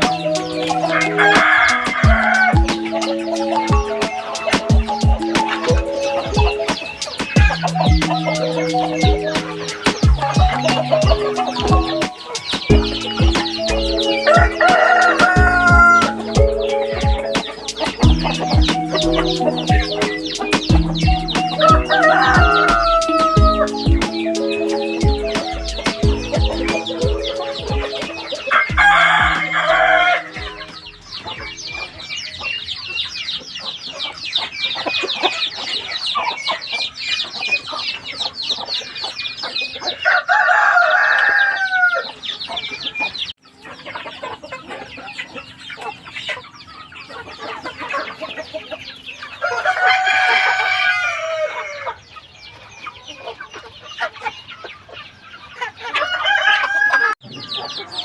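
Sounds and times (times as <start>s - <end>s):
roosters crowing: 0.0s - 32.0s, 39.9s - 42.2s, 49.3s - 52.0s, 55.9s - 58.0s
chickens clucking: 0.0s - 58.0s.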